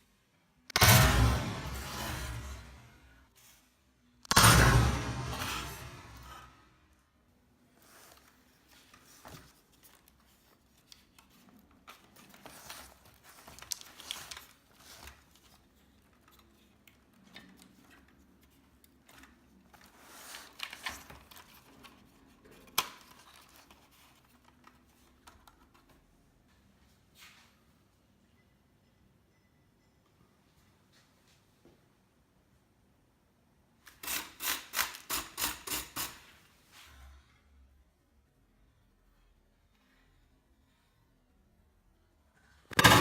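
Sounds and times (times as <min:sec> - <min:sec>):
faint handling noises: 0:07.5 - 0:28.5.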